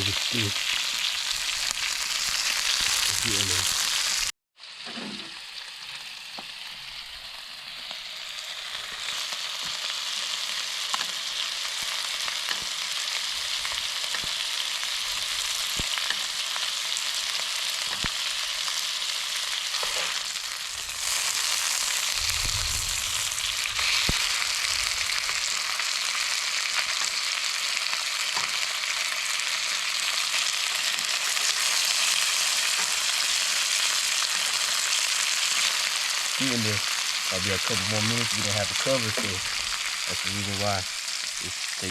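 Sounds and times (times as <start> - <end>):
oil popping and crackling: 0.0 - 4.3, 8.8 - 41.9
fish sizzling in oil: 0.0 - 41.9.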